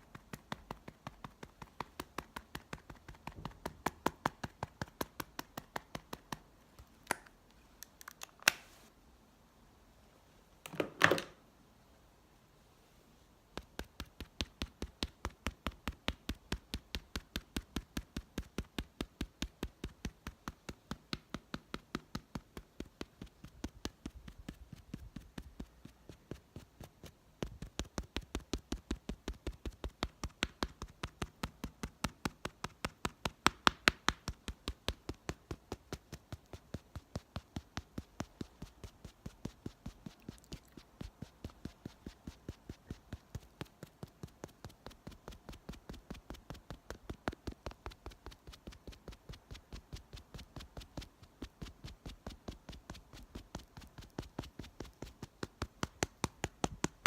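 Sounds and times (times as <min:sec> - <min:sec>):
rapid even tapping: 0:00.0 - 0:06.9, 0:52.2 - 0:57.0.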